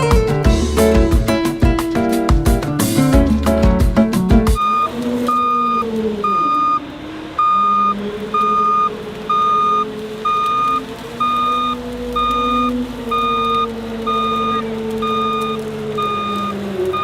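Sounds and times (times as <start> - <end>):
music: 0.0 - 4.6
vehicle engine running: 0.0 - 17.0
reversing alarm beeping: 4.6 - 17.0.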